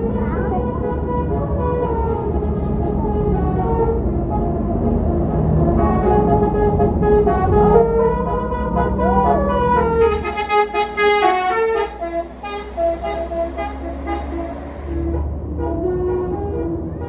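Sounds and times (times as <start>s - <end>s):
bus engine rumble: 0.0s - 17.0s
musical air horn melody: 1.0s - 16.8s.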